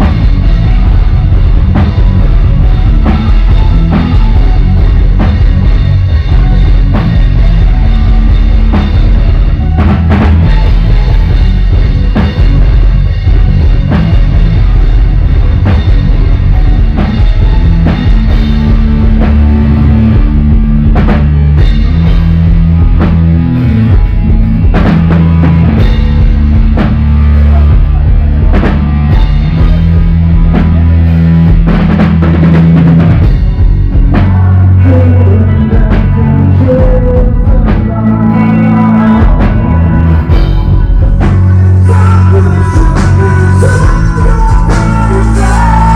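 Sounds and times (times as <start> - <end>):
heavy bass drum hits: 0.0 - 34.9
loud rock music: 0.0 - 45.9.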